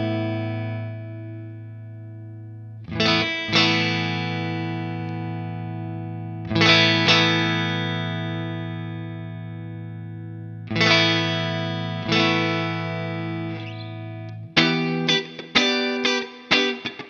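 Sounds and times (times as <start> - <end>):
electric guitar chords: 0.0 - 17.0.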